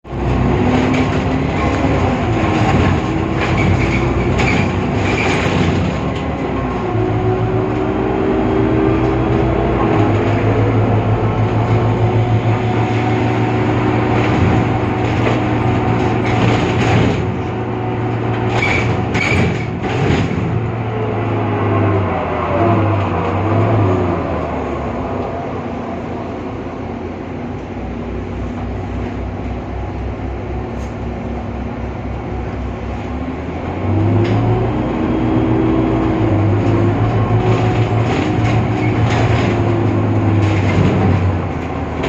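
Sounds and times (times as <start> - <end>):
bus engine drone with whining: 0.0 - 42.0
rattles and knocks: 0.2 - 7.0, 11.3 - 20.8, 36.5 - 42.0.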